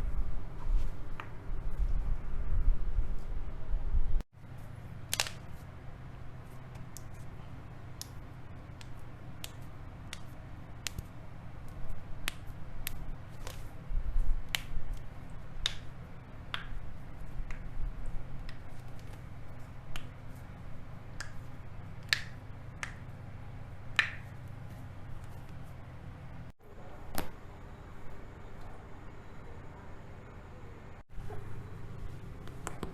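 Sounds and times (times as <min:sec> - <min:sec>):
steady low hum: 0:00.0 - 0:32.9.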